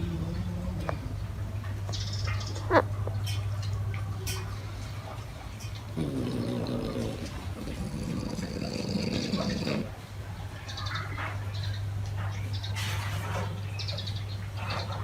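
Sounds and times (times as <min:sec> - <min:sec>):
dog groaning whine: 0:00.0 - 0:01.2, 0:05.9 - 0:10.0.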